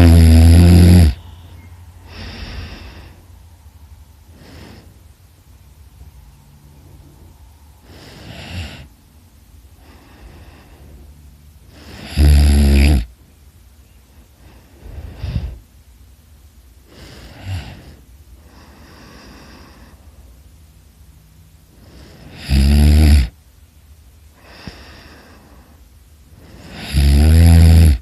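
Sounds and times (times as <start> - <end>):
person snoring: 0.0 - 1.2, 11.7 - 13.1, 21.8 - 23.4, 26.4 - 28.0
quiet breathing: 0.0 - 27.1.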